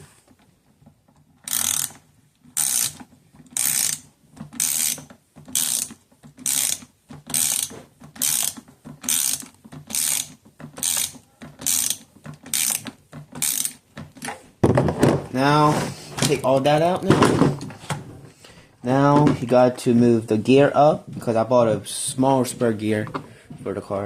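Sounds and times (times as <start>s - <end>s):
ratcheting screwdriver clicking: 1.4s - 14.3s.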